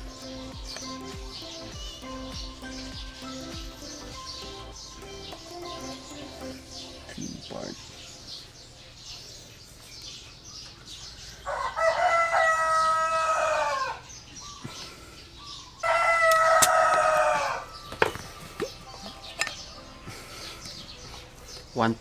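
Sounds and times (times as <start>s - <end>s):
rooster crowing: 11.4s - 14.1s, 15.8s - 18.6s.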